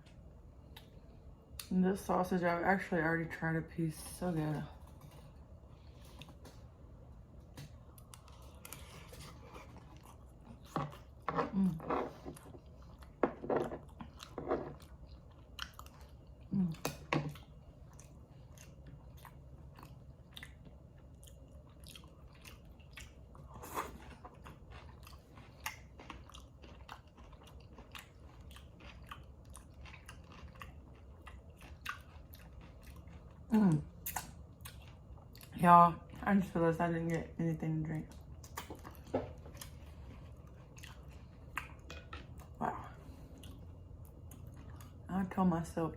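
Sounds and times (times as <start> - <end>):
close chewing with mouth clicks: 13.8 - 35.6, 38.1 - 45.1.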